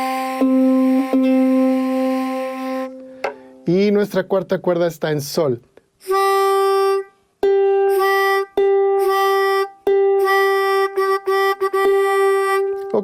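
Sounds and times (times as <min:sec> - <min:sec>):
pitch pipe note: 0:06.0 - 0:13.0.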